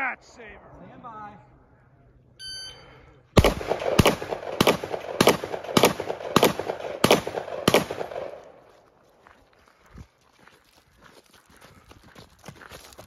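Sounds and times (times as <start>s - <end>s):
shotgun shots echoing: 3.4s - 8.6s.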